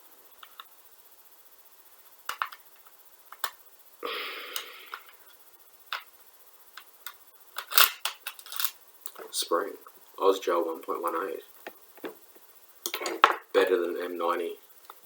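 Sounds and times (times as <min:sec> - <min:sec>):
plastic and metal parts clicking: 0:07.6 - 0:08.8.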